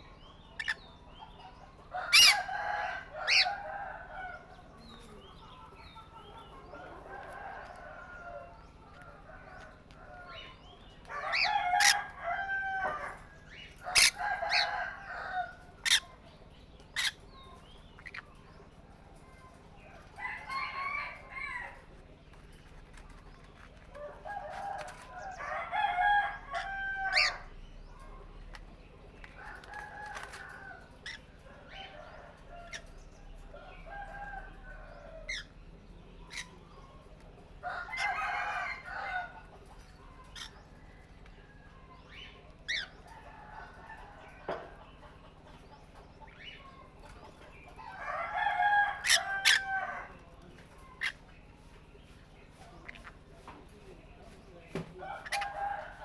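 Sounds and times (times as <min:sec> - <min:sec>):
rooster crowing: 0:01.9 - 0:04.5, 0:10.2 - 0:15.7, 0:24.0 - 0:27.6, 0:37.6 - 0:39.4, 0:47.8 - 0:50.3, 0:55.0 - 0:56.0.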